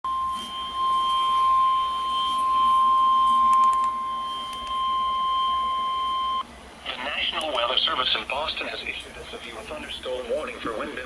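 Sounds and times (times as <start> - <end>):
long high-pitched alarm beep: 0.0 - 6.5.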